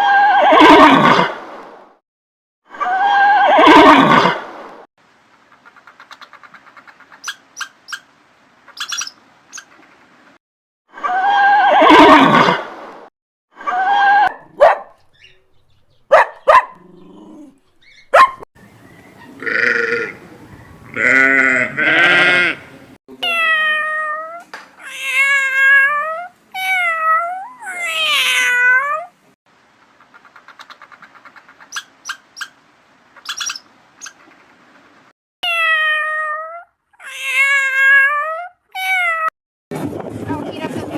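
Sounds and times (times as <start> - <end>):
animal calls: 16.0 - 22.9.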